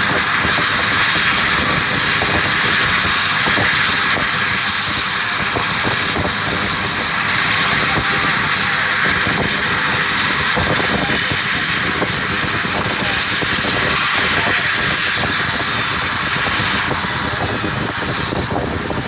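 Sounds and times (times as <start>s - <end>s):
helicopter engine rush: 0.0s - 19.0s
thin high whine: 7.1s - 18.6s.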